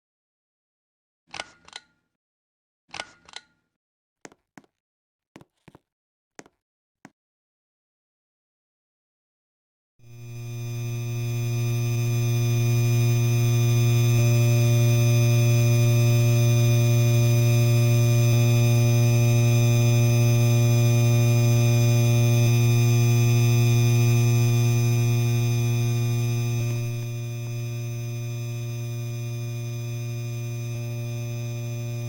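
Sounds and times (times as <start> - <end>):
electric fan motor humming: 10.0 - 32.0.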